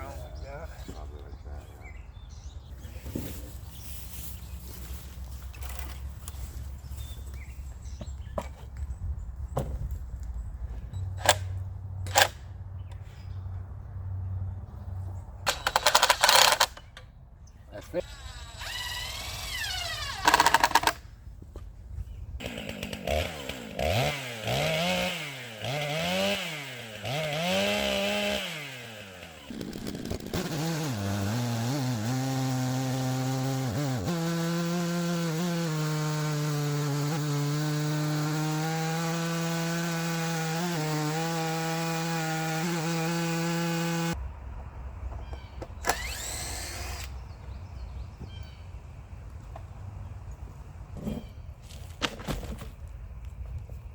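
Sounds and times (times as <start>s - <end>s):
chainsaw cutting log: 15.5s - 16.7s, 18.0s - 21.0s, 22.4s - 44.2s, 45.8s - 47.2s.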